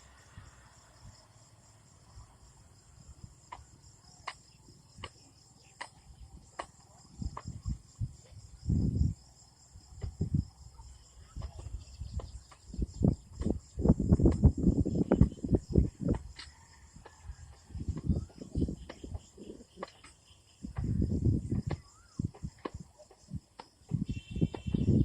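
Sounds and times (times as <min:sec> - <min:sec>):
crickets chirring: 0:00.0 - 0:25.0
low thumps and rumbles: 0:11.6 - 0:16.4.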